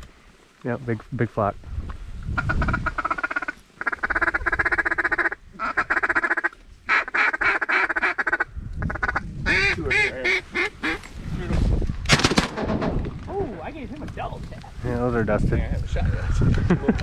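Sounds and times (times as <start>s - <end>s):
duck quacking: 2.4s - 11.0s.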